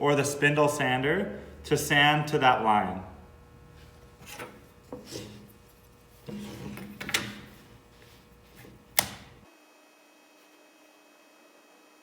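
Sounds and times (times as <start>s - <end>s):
wood and tools knocking: 3.8s - 9.4s.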